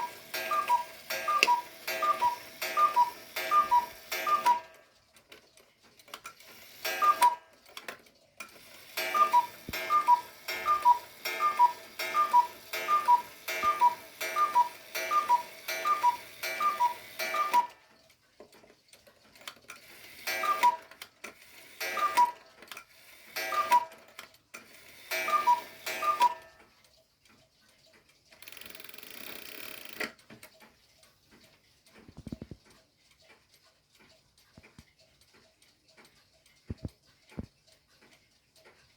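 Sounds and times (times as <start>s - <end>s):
clock mechanism whirr: 0.0s - 4.9s, 6.2s - 17.8s, 19.4s - 26.7s, 28.2s - 30.7s
cuckoo clock calling: 0.0s - 5.1s, 6.3s - 7.9s, 8.5s - 18.1s, 19.8s - 26.9s, 28.4s - 30.1s
clock ticking: 0.0s - 38.9s.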